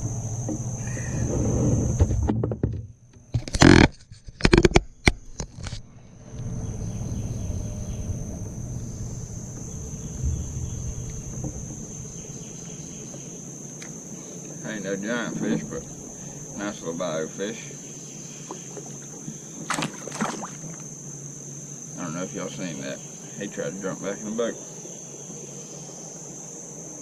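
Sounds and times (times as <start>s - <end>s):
insects droning: 0.0s - 27.0s
knocks and rustles: 1.4s - 5.9s, 9.4s - 12.4s
low rumble: 5.8s - 17.4s.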